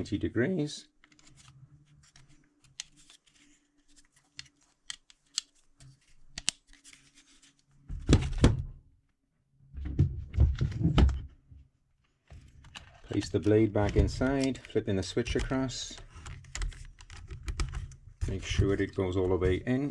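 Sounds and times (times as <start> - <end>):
small clicks and taps: 4.2 - 6.7.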